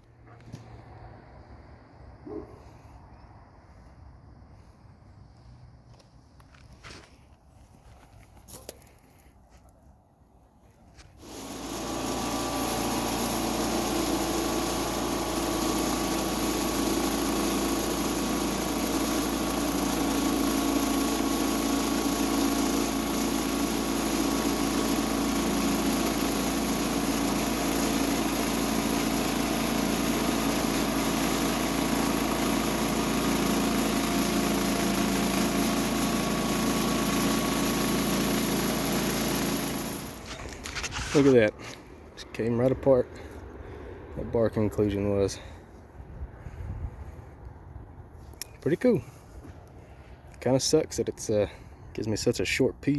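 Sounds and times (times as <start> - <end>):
small gasoline engine running: 11.2 - 41.8.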